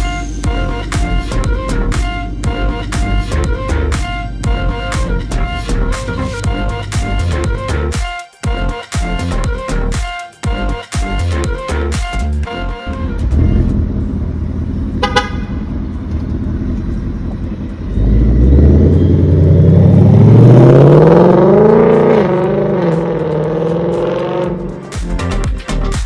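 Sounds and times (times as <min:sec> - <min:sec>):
car engine exhaust revving: 0:00.0 - 0:07.9, 0:12.9 - 0:25.0
brief beep: 0:17.9 - 0:19.8.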